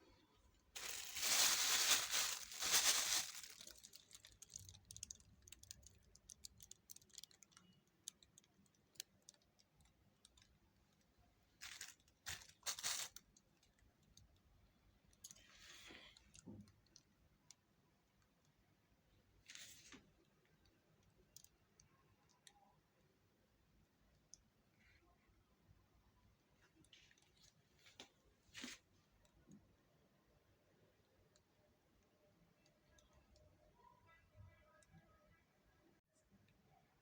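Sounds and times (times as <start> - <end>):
plastic crinkling: 0.7 - 10.5, 11.6 - 14.3.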